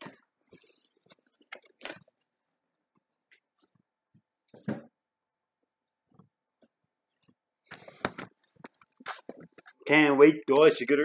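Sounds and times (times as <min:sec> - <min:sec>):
small clicks and rustles: 0:06.1 - 0:09.8.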